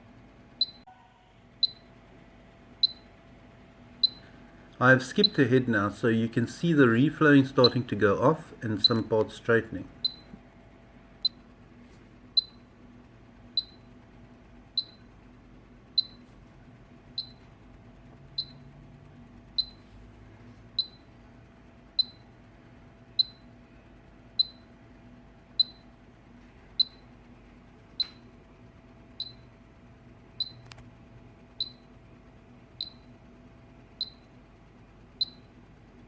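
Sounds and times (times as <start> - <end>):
faint steady hum: 0.0 - 36.0
electronic beeper beeping: 0.6 - 1.9, 2.8 - 3.1, 4.0 - 4.3, 8.7 - 9.2, 10.0 - 10.4, 12.4 - 12.6, 13.6 - 13.9, 14.8 - 15.1, 16.0 - 16.2, 17.1 - 17.4, 18.4 - 18.7, 22.0 - 22.3, 23.2 - 23.5, 25.6 - 25.9, 29.2 - 29.5.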